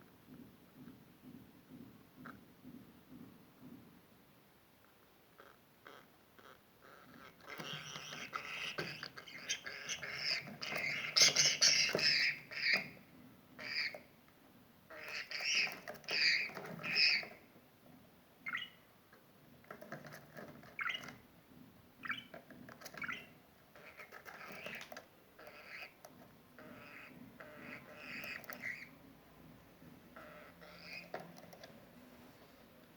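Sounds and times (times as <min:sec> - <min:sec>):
budgerigar chattering: 0:05.4 - 0:13.0, 0:13.6 - 0:14.1, 0:14.9 - 0:17.4, 0:18.4 - 0:18.8, 0:20.6 - 0:21.2, 0:22.0 - 0:26.0, 0:26.6 - 0:29.0, 0:30.2 - 0:31.3.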